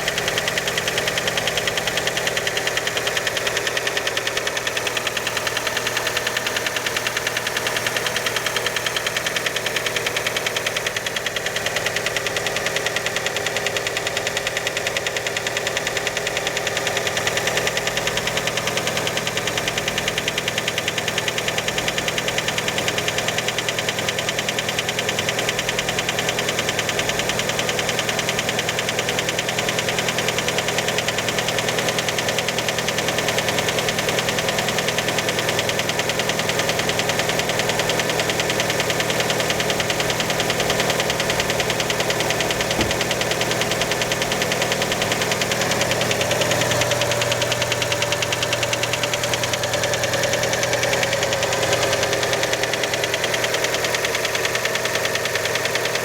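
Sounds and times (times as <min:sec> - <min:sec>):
car engine running: 0:00.0 - 0:56.0
rapid engine knock: 0:00.0 - 0:56.0.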